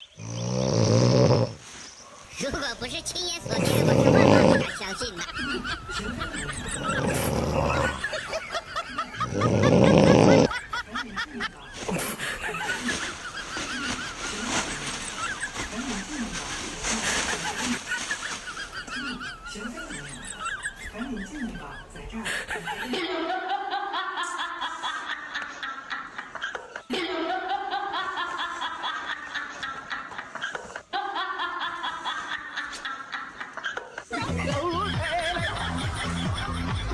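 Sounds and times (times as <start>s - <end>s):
raspy snoring: 0.2s - 1.6s, 3.4s - 4.8s, 6.6s - 8.1s, 9.2s - 10.5s
pulsing snicker-like vocal sound: 3.5s - 36.9s.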